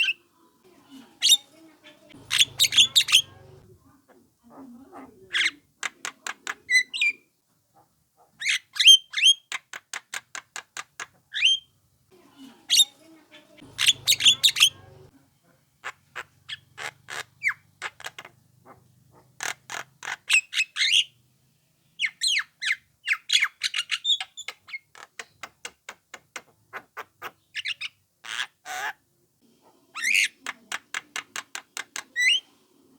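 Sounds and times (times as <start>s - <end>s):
myna squawking and clicking: 1.2s - 7.2s, 7.8s - 11.6s, 12.7s - 15.1s, 15.8s - 21.0s, 29.6s - 32.5s.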